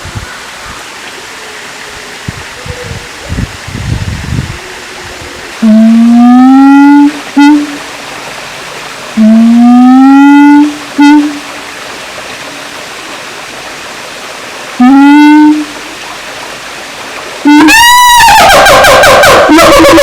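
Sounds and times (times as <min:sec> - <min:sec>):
gibbon hooting calls: 0:09.5 - 0:11.5, 0:17.4 - 0:20.0.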